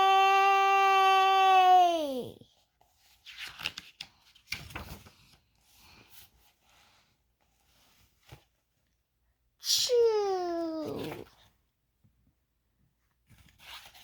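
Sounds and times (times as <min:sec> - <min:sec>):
book pages turning: 0:02.8 - 0:06.5, 0:13.3 - 0:14.0.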